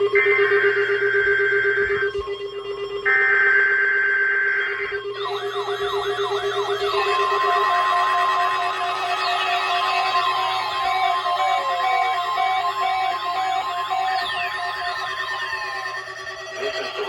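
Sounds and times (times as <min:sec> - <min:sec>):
siren-like sweeping alarm: 0:00.0 - 0:17.0
screeching digital tone bursts: 0:05.1 - 0:17.0.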